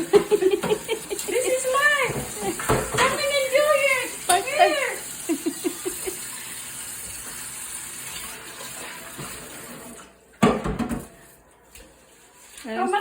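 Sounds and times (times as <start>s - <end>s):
tap running into sink: 0.0s - 4.6s, 5.9s - 11.1s.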